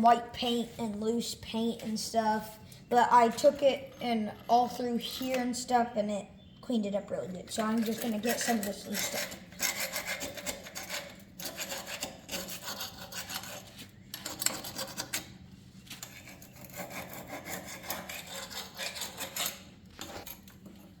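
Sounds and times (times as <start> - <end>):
paint scraper rasping: 7.6 - 15.3, 16.0 - 20.4.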